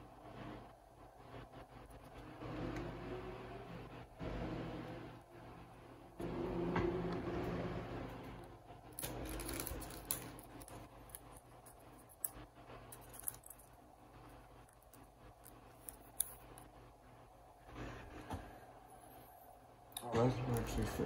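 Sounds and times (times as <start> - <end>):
cards rustling and clicking: 9.0 - 13.7.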